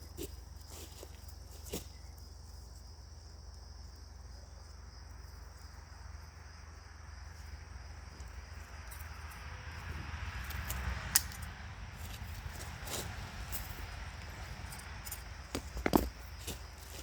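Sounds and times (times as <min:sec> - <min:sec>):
insects trilling: 0:00.0 - 0:17.0.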